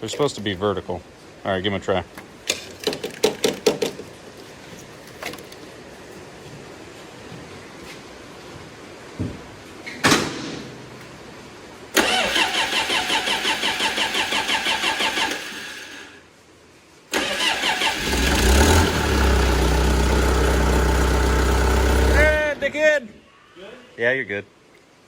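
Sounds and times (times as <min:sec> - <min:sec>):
starter motor cranking: 0:12.0 - 0:16.1, 0:17.1 - 0:22.6
engine running: 0:17.2 - 0:22.6.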